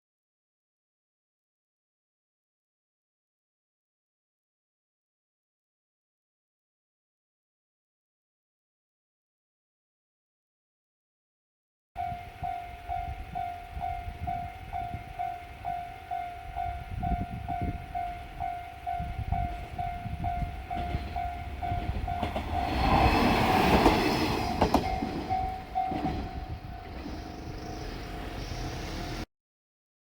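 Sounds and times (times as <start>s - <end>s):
level crossing bell ringing: 12.0s - 22.9s, 24.4s - 27.4s
diesel railcar passing: 12.0s - 29.3s.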